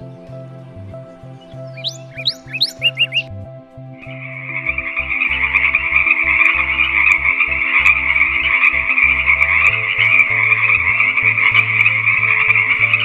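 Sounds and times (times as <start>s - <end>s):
chorus of small animals trilling: 4.1s - 13.0s.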